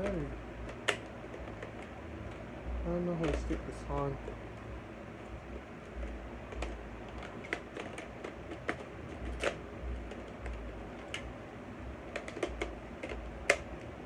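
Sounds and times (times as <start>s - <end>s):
plastic clicks and taps: 0.0s - 2.4s, 3.2s - 4.4s, 5.9s - 11.3s, 12.1s - 13.9s.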